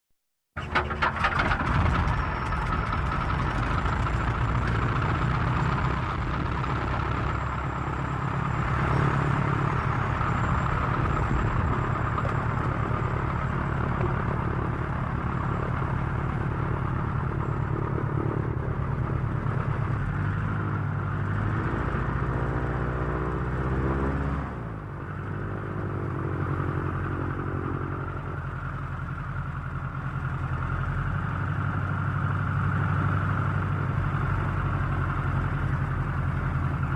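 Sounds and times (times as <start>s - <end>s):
propeller airplane engine drone: 0.6s - 36.9s.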